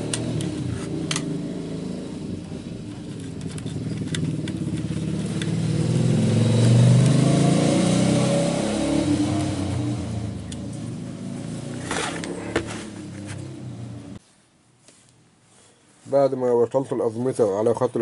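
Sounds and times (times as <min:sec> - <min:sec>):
vehicle engine passing: 0:00.0 - 0:14.2.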